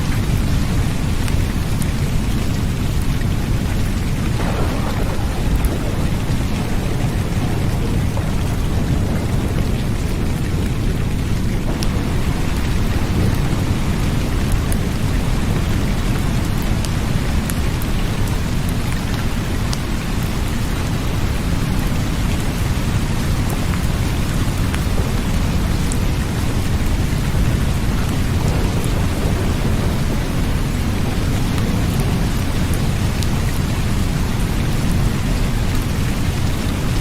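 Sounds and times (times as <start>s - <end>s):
deep thunder rumble: 0.0s - 37.0s
heavy rain: 0.0s - 37.0s
drops ticking: 4.3s - 15.0s.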